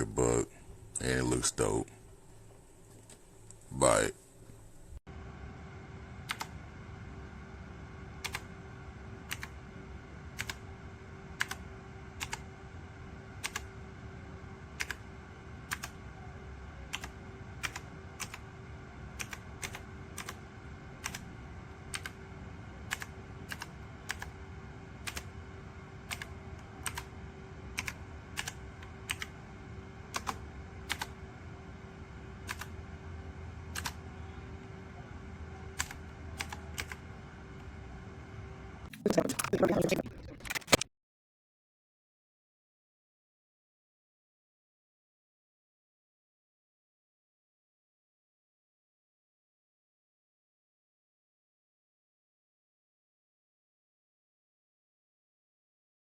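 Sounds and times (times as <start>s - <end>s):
steady low hum: 0.0s - 40.8s.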